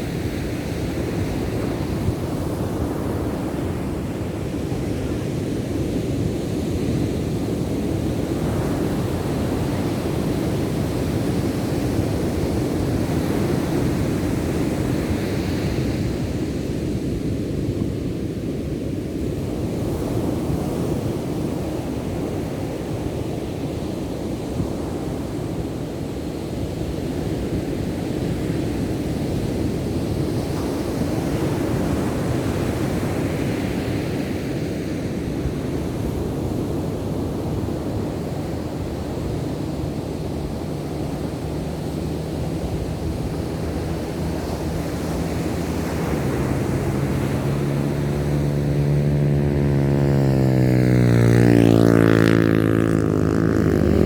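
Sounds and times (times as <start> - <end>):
wind on microphone: 29.2 - 54.0
engine passing by: 30.6 - 54.0
ocean surf breaking: 38.0 - 48.9.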